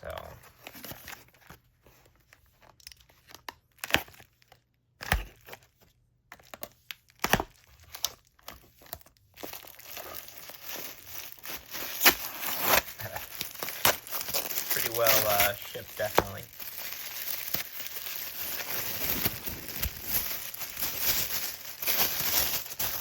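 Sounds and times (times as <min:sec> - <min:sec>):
packaging tearing: 0:06.4 - 0:23.0
packaging crinkling: 0:07.4 - 0:23.0.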